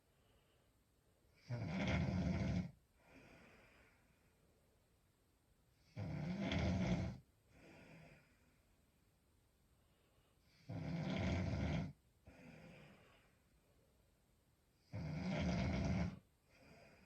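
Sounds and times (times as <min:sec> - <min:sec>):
soft breath: 0:00.0 - 0:01.0, 0:02.9 - 0:04.7, 0:07.4 - 0:08.9, 0:09.7 - 0:10.6, 0:12.2 - 0:14.0, 0:16.4 - 0:17.0
woman snoring: 0:01.4 - 0:03.7, 0:05.8 - 0:08.3, 0:10.5 - 0:13.1, 0:14.8 - 0:17.0.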